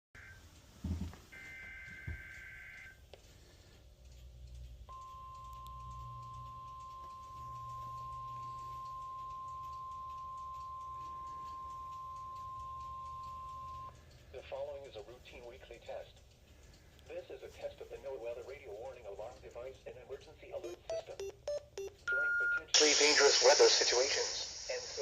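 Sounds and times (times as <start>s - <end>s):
steady alarm tone: 1.3s - 3.0s, 4.9s - 14.0s.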